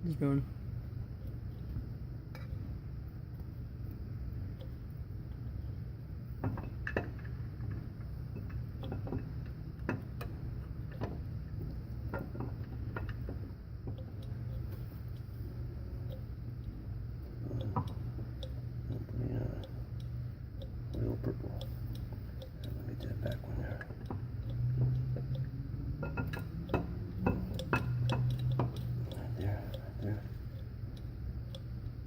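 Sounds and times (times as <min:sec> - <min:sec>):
steady low hum: 0:00.0 - 0:32.0
metal engine parts clicking: 0:12.0 - 0:32.0.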